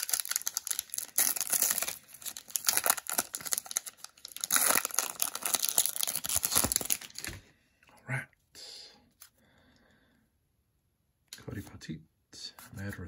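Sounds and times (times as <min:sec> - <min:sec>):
foil wrapper tearing and crinkling: 0:00.0 - 0:07.4.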